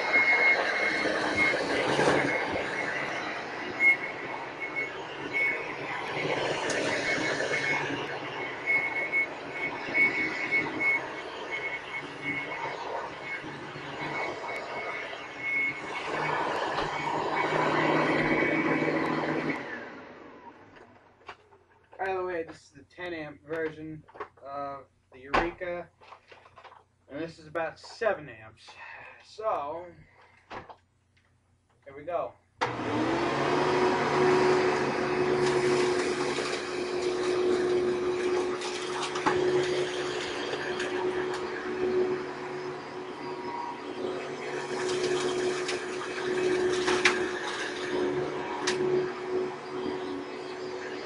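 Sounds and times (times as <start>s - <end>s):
vacuum cleaner running: 0.0s - 21.0s, 32.6s - 51.0s
vacuum motor spinning down: 0.0s - 21.0s, 32.6s - 51.0s.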